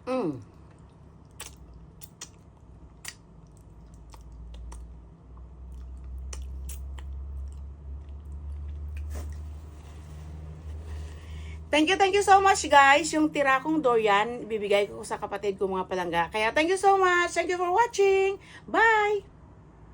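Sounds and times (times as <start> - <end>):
steady low hum: 0.0 - 19.9
chewing soft fruit: 0.3 - 11.3
wet mouth clicks and smacks: 0.7 - 9.4.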